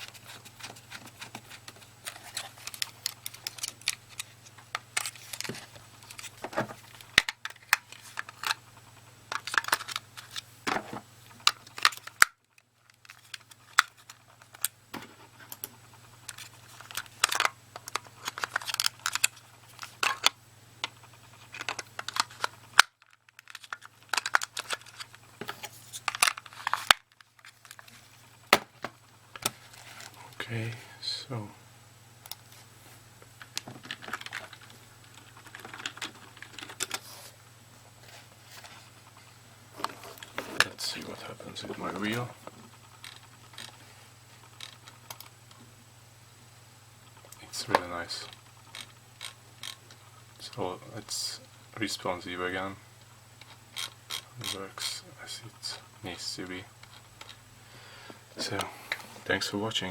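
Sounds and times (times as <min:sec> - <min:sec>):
plastic mouse clicks and rattles: 0:00.0 - 0:08.6, 0:09.3 - 0:10.4, 0:15.4 - 0:28.0, 0:33.5 - 0:37.0, 0:44.5 - 0:45.3, 0:48.3 - 0:49.8
steady low hum: 0:00.0 - 0:59.9.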